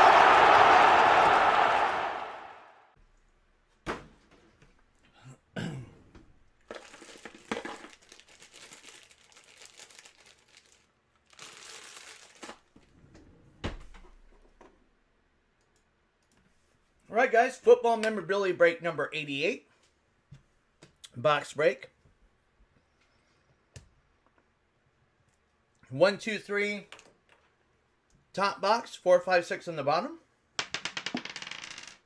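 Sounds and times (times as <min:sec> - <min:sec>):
packaging crinkling and rustling: 0:06.6 - 0:12.8.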